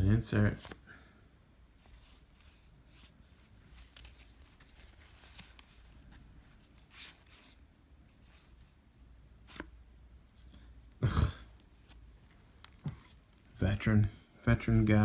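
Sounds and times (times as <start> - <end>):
trading cards rustling: 1.7 - 8.8.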